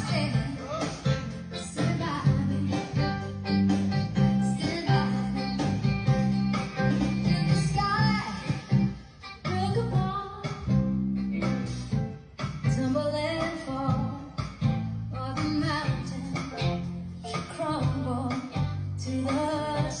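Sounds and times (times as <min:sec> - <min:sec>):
person singing: 0:00.0 - 0:03.6, 0:04.2 - 0:10.8, 0:15.2 - 0:20.0
bass line: 0:00.0 - 0:20.0
guitar: 0:00.0 - 0:20.0.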